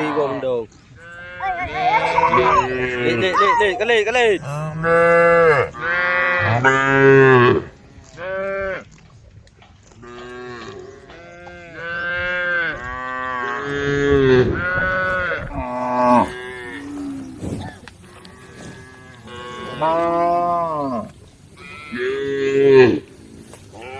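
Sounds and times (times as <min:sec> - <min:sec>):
cows mooing: 0:04.4 - 0:08.8, 0:10.0 - 0:23.9.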